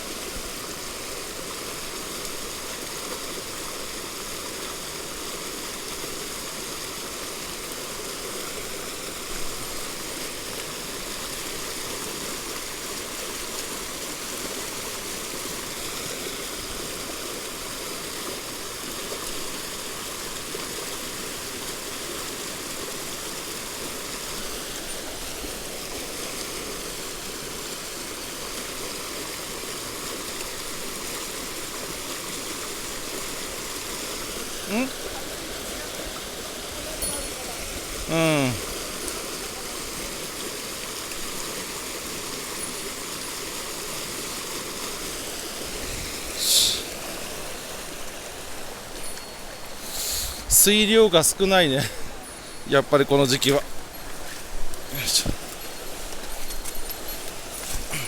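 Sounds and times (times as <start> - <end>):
mountain stream rushing: 0.0 - 58.0.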